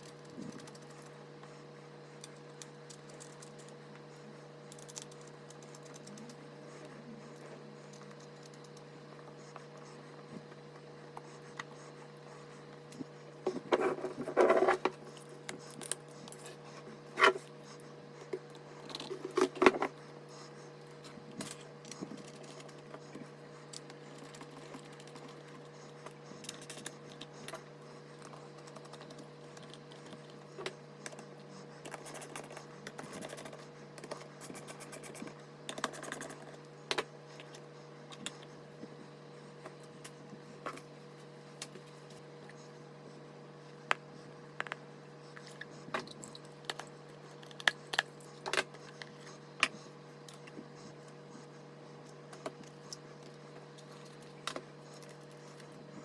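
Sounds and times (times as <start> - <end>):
low electrical hum: 0.0 - 56.0.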